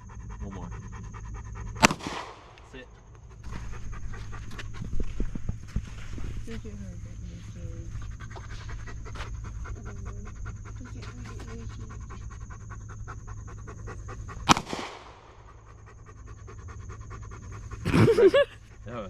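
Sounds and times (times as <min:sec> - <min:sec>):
dog panting: 0:00.0 - 0:19.0
gunshot: 0:01.8 - 0:02.6, 0:14.4 - 0:15.3.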